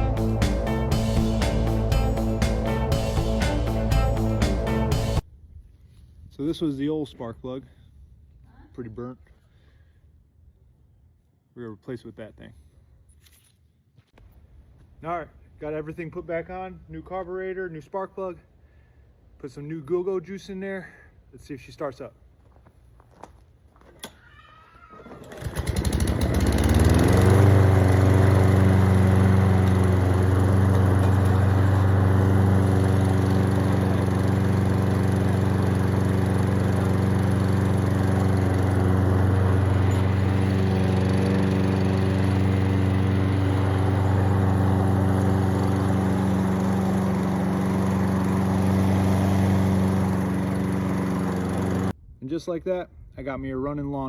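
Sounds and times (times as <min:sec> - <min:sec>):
lawn mower engine starting: 0:00.0 - 0:05.2, 0:24.9 - 0:52.0.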